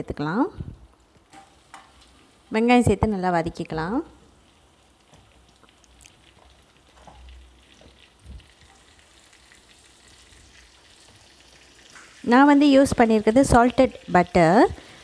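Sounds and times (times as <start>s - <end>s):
onion sizzling in a pan: 0.1s - 15.0s
small crackles: 4.2s - 12.3s.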